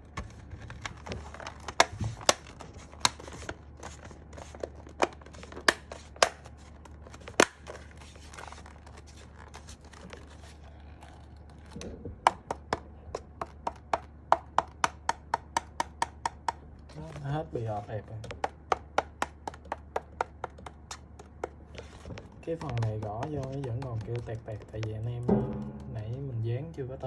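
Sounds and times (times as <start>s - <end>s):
plastic keyboard case clicks: 18.2s - 24.9s
keyboard typing: 19.4s - 25.3s.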